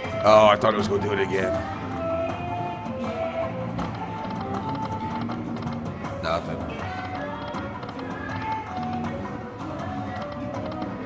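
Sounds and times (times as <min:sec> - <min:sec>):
slot machine electronic music: 0:00.0 - 0:11.0
reels spinning ticks: 0:03.8 - 0:06.0, 0:06.8 - 0:11.0.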